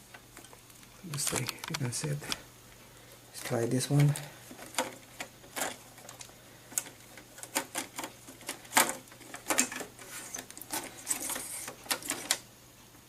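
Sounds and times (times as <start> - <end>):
clicks and knocks of plastic cover: 4.0 - 12.4.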